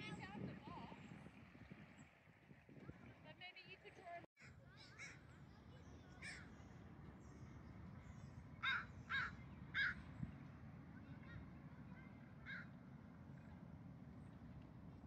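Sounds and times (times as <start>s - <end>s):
low background hum: 0.0s - 15.0s
bird harsh calls: 6.1s - 6.7s, 8.6s - 10.1s.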